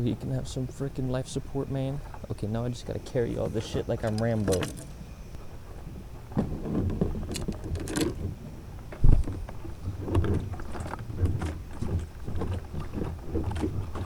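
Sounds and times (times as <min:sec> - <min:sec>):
fishing gear knocking and rattling: 0:03.3 - 0:05.0, 0:05.7 - 0:14.0.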